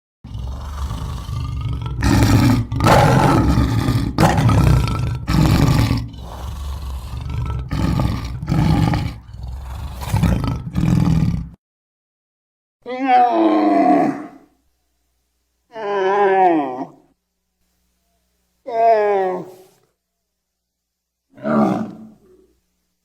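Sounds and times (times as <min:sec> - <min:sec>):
gorilla roaring: 0:00.3 - 0:11.6, 0:12.8 - 0:14.5, 0:15.7 - 0:17.1, 0:18.6 - 0:19.8, 0:21.3 - 0:22.5.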